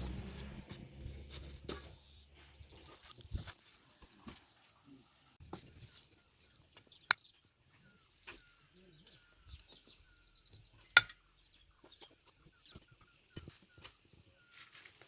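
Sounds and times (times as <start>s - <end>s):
faint bird chirps: 5.7s - 15.0s.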